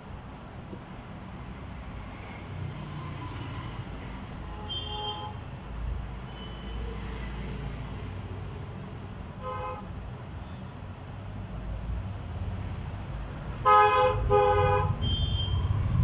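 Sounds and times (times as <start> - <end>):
background traffic hum: 0.0 - 16.0
vehicle horns tooting: 4.5 - 5.4, 9.4 - 10.7, 13.6 - 15.8.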